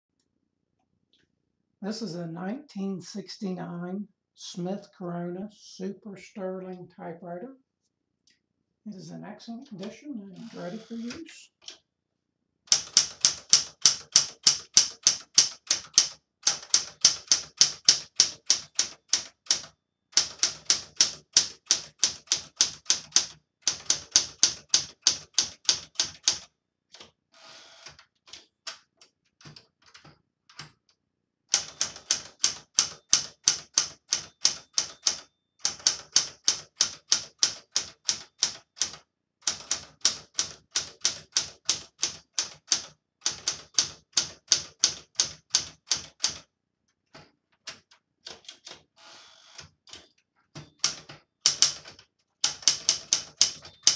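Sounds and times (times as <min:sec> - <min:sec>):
typewriter key strikes: 0:31.6 - 0:39.8, 0:50.8 - 0:53.9.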